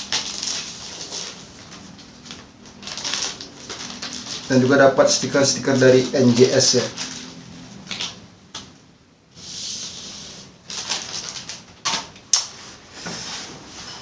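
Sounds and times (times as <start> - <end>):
packaging rustling: 0.0 - 8.2, 10.6 - 12.4.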